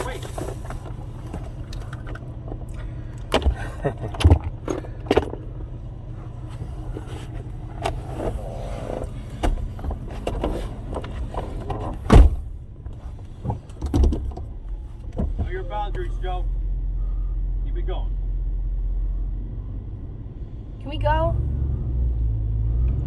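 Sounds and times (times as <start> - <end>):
sharp knocks and thumps: 0.0 - 5.8, 6.5 - 15.6
car rumble: 0.0 - 23.0.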